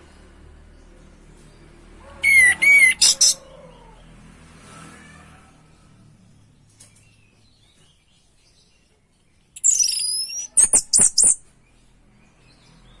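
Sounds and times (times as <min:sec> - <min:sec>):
thrush singing: 0:02.1 - 0:04.1.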